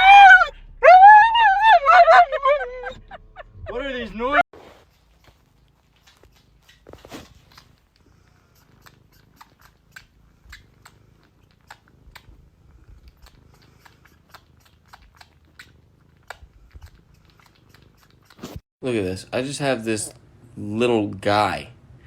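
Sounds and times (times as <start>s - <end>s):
pet chewing with crunching clicks: 5.0s - 18.4s.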